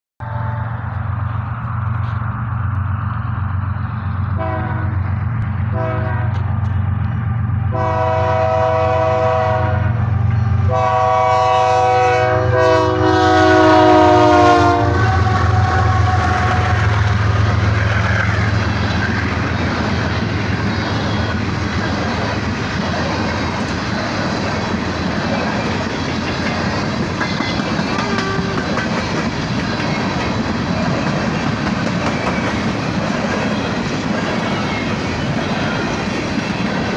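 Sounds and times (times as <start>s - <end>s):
train air horn blasts: 0.2s - 1.0s, 4.4s - 5.0s, 5.7s - 6.5s, 7.7s - 17.5s, 27.9s - 28.9s
diesel engine drone: 0.2s - 11.2s, 14.0s - 27.2s
freight cars rumbling and clattering: 0.7s - 7.9s, 15.2s - 36.9s.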